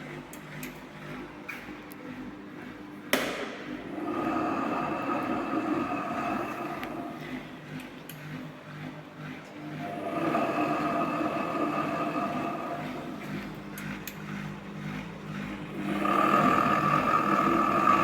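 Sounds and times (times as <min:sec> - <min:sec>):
washing machine spinning: 0:00.0 - 0:18.0
sharp knock: 0:03.1 - 0:03.6.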